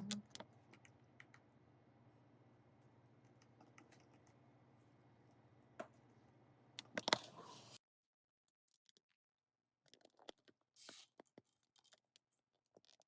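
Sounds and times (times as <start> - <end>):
faint steady hum: 0.0 - 7.8.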